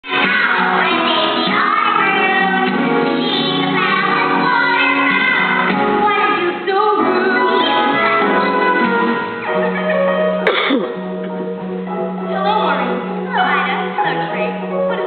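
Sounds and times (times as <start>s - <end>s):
woman and children singing: 0.0s - 9.4s
instrumental accompaniment: 0.0s - 15.0s.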